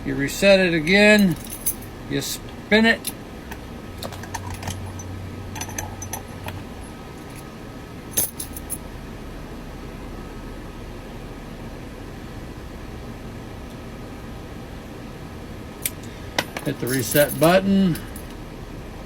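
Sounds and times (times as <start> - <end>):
steady low hum: 0.0 - 19.0
metallic clicks of keys and tools: 4.0 - 6.6, 8.2 - 8.8, 15.8 - 18.4.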